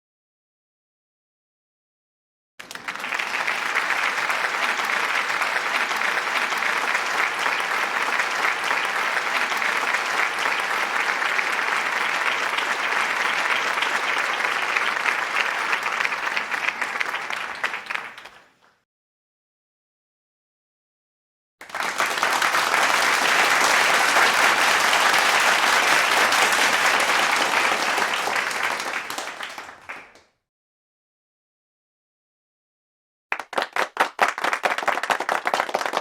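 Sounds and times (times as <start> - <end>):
crowd applauding: 2.6 - 18.7, 21.6 - 30.3, 33.3 - 36.0.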